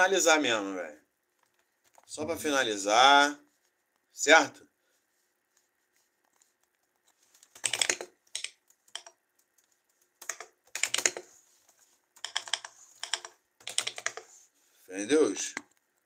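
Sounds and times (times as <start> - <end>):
typing on computer keyboard: 7.4 - 11.3, 12.2 - 14.3.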